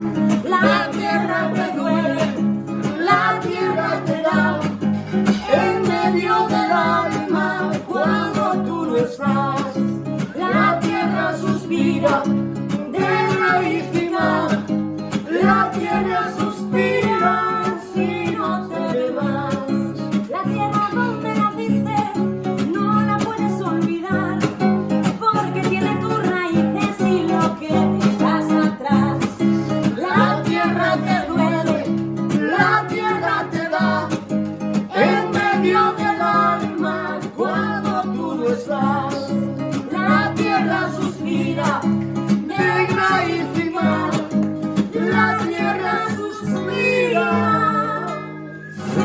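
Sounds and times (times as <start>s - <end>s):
acoustic guitar strummed: 0.0s - 49.0s
person singing: 0.0s - 49.0s.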